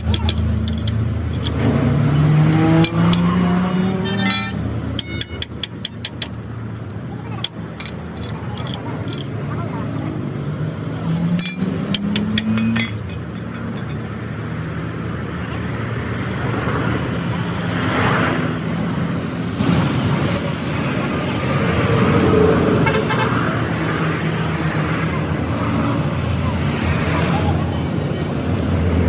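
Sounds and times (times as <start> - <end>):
sharp metallic clinks: 0.0 - 10.2, 11.1 - 14.2
road traffic with engine rumble: 0.0 - 29.0.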